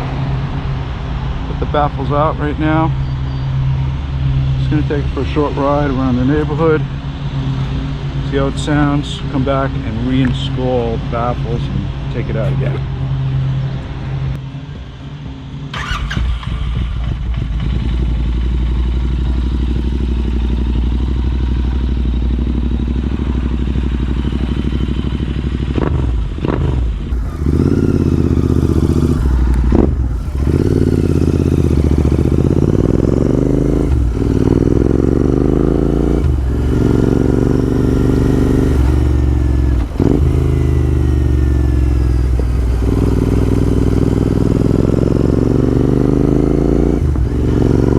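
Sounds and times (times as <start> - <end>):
motorcycle engine accelerating: 15.6 - 47.9.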